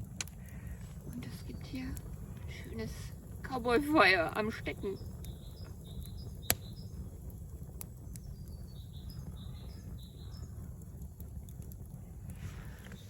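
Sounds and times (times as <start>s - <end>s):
steady low rumble: 0.0s - 13.0s
sharp clicks: 0.1s - 0.6s, 6.0s - 6.7s
songbird chirping: 1.0s - 10.8s.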